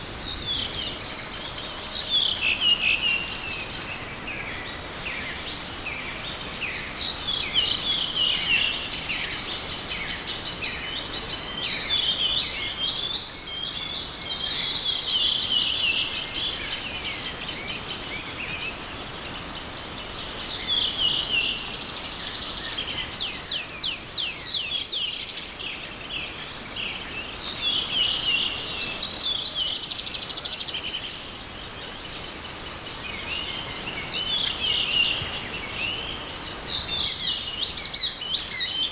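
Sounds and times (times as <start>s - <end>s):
small stream rushing: 0.0s - 38.9s
songbirds singing: 0.0s - 38.9s.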